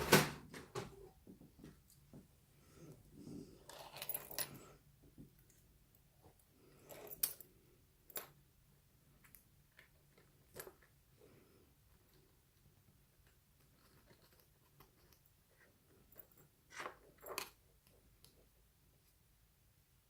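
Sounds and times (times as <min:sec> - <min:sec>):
metal lock parts clinking: 0:03.6 - 0:04.7, 0:06.8 - 0:07.5.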